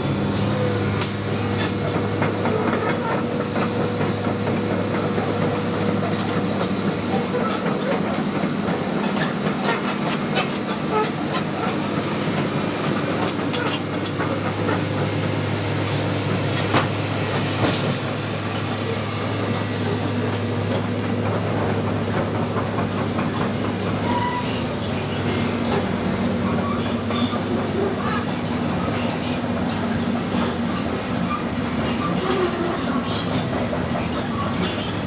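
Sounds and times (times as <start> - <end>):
excavator engine running: 0.0 - 35.0
metallic squeaks and clicks: 24.0 - 24.6.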